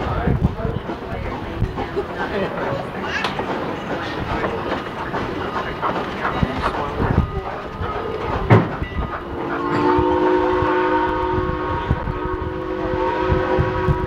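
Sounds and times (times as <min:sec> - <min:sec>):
train rattling and clattering: 0:00.0 - 0:14.0
steam locomotive whistle blast: 0:09.5 - 0:14.0.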